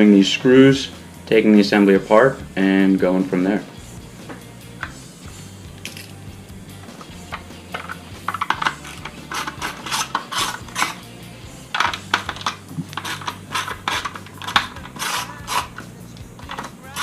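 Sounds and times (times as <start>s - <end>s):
steady low hum: 3.6s - 17.0s
small clicks and clinks of screws: 5.8s - 6.2s.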